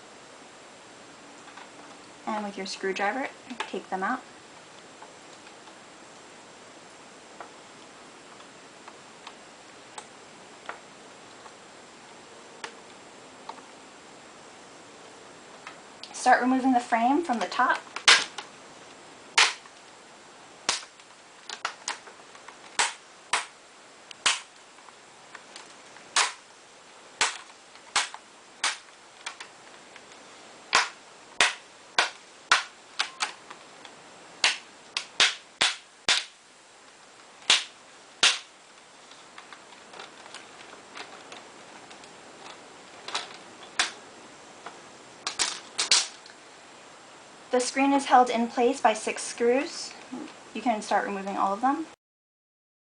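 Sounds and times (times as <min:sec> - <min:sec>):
plastic clips snapping loose: 0:18.0 - 0:18.5, 0:22.7 - 0:23.5, 0:25.6 - 0:26.4, 0:27.2 - 0:29.5, 0:39.1 - 0:44.0, 0:44.6 - 0:46.3.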